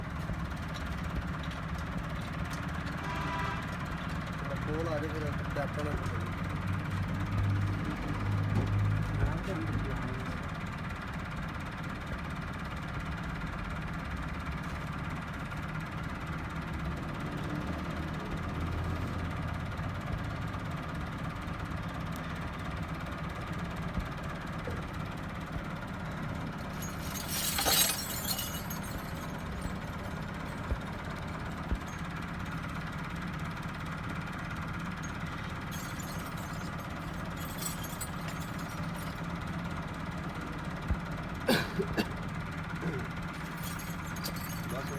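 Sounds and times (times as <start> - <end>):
tractor diesel engine idling: 28.8 - 44.9.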